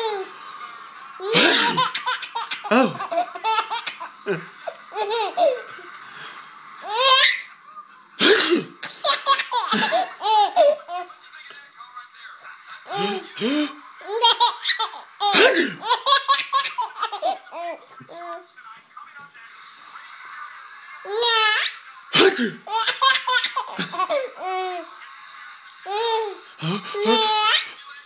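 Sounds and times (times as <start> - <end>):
baby laughing: 1.2 - 5.8, 6.8 - 7.5, 8.9 - 11.1, 14.0 - 18.4, 21.1 - 21.8, 22.7 - 24.9, 25.9 - 27.8.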